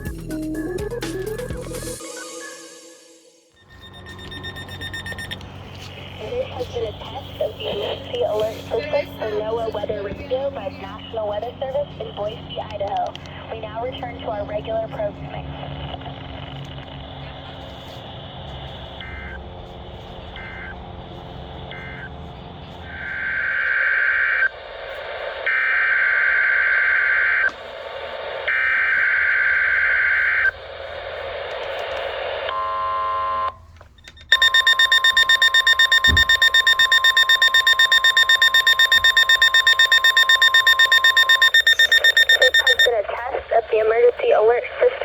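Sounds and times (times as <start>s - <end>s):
screeching data bursts: 3.6s - 5.4s, 34.3s - 42.9s.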